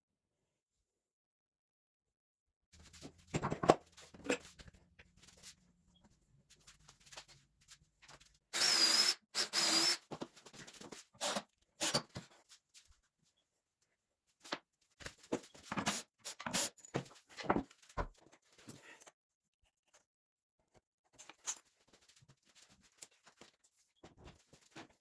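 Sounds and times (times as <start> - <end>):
power drill bursts: 8.6 - 10.1, 11.2 - 12.0.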